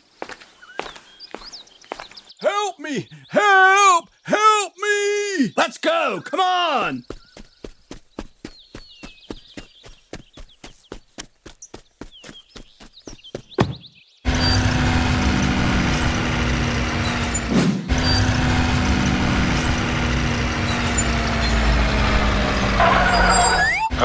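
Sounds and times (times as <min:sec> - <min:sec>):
vehicle engine rumble: 0:14.3 - 0:24.0.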